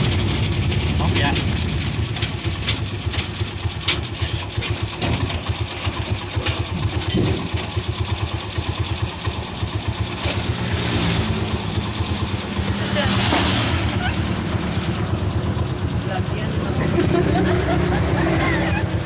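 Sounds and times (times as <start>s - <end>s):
vehicle engine running: 0.0s - 19.0s
light clicks and rattles: 1.3s - 7.8s.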